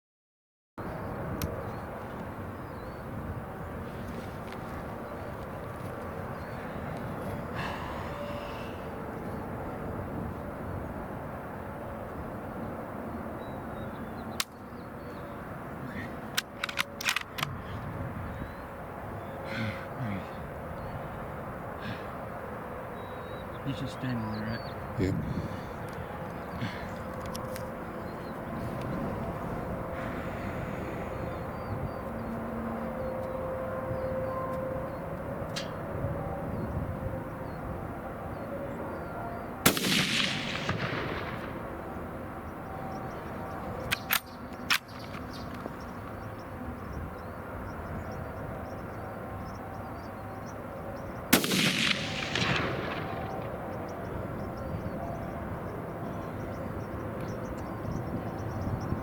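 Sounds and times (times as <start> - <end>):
outdoor background rumble: 0.8 - 59.0
rifle shot echoing: 39.6 - 42.0, 51.3 - 53.8.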